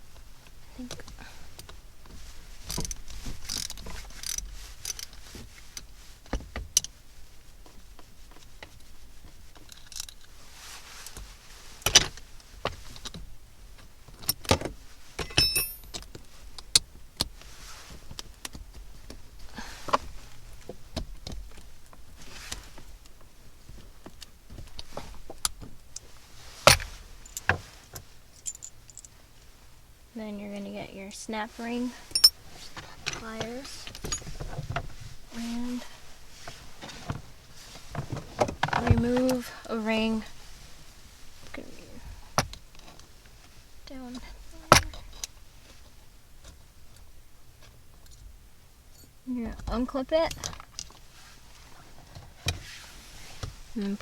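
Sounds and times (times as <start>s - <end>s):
metal tools clinking and knocking: 15.2s - 16.0s, 32.1s - 32.4s, 33.1s - 34.4s.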